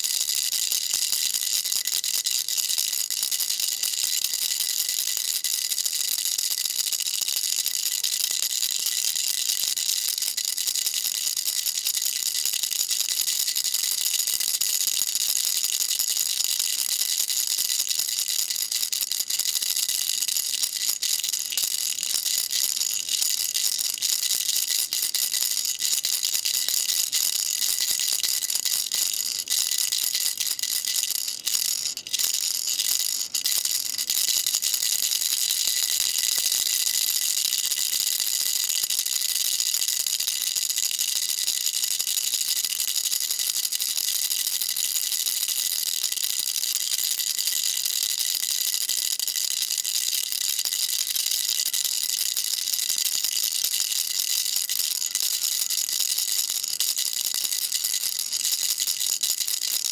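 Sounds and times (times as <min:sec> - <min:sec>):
baby rattle shaken: 0:16.3 - 0:39.4, 0:45.4 - 0:59.9.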